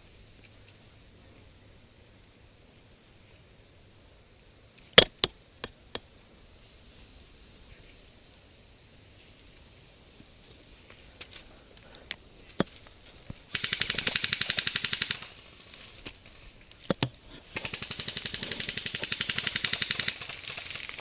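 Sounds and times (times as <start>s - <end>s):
airsoft guns firing full-auto bursts: 13.5s - 15.6s, 17.5s - 21.0s.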